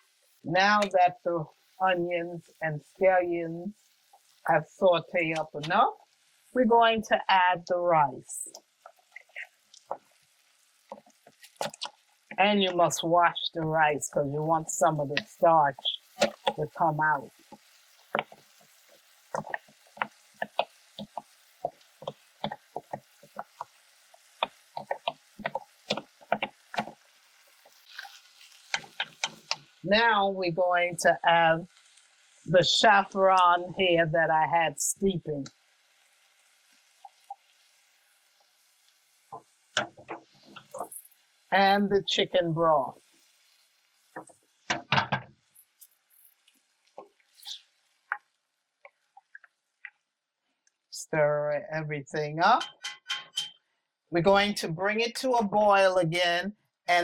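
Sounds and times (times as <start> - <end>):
spoon scraping cast iron pot: 10.9 - 12.4, 15.1 - 23.8, 52.6 - 53.6.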